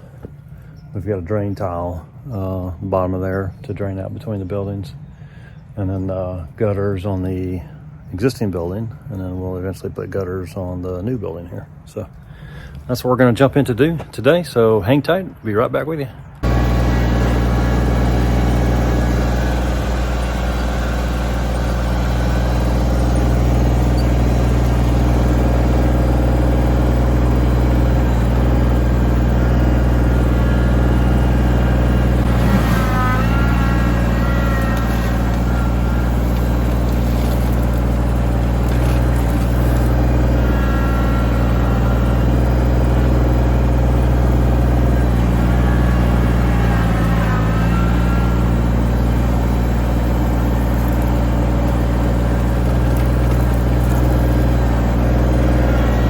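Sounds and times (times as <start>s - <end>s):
engine running: 16.2s - 56.0s.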